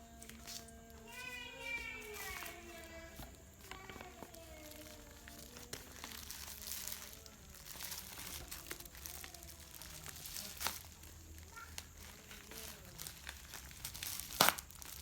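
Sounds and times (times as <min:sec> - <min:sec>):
plastic packaging crinkling: 0:00.0 - 0:15.0
sharp crackles and clicks: 0:02.1 - 0:15.0
parcel tearing open: 0:05.6 - 0:15.0.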